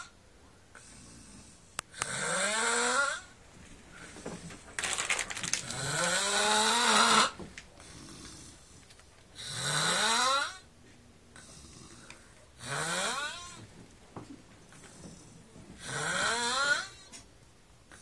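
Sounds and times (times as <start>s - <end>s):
person snoring: 0.8s - 3.3s, 5.6s - 8.8s, 9.4s - 10.6s, 11.4s - 13.6s, 15.0s - 17.2s.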